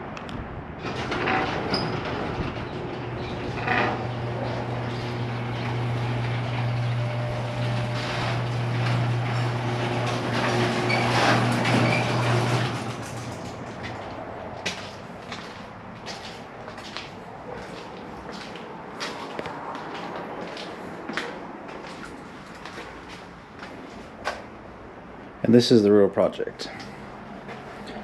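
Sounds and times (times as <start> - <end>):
rattling and clatter: 0.8 - 15.0
vehicle engine humming: 2.6 - 25.4.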